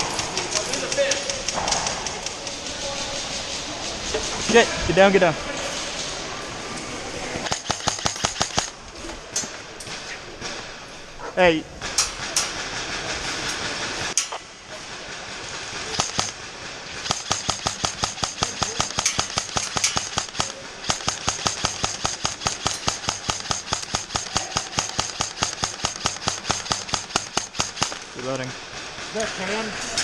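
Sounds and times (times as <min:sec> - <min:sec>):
airsoft gun shots: 0:07.4 - 0:08.8, 0:15.9 - 0:28.1.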